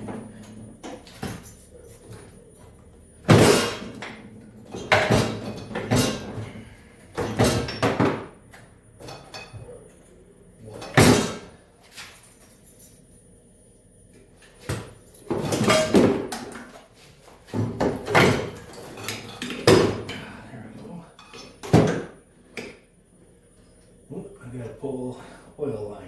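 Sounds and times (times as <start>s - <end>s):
heavy metal clunks and knocks: 3.2s - 8.4s.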